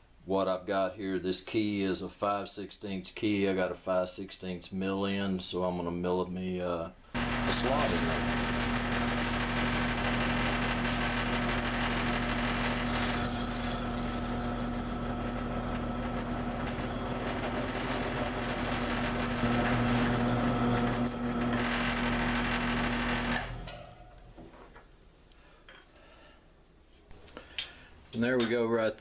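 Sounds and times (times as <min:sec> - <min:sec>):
milling machine cutting metal: 0:07.2 - 0:24.0
motor hum: 0:07.2 - 0:24.3.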